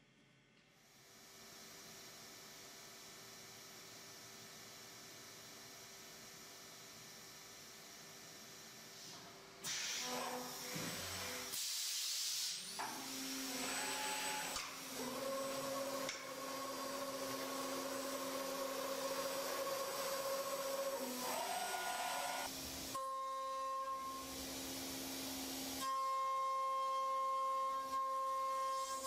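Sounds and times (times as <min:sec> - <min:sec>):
wood cutting noise: 0:13.1 - 0:23.1
router spindle whine: 0:13.4 - 0:23.1.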